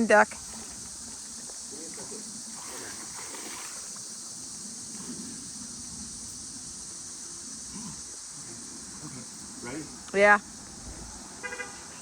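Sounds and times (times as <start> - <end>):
night insects chirping: 0.0 - 12.0
low voices murmuring: 6.8 - 11.3.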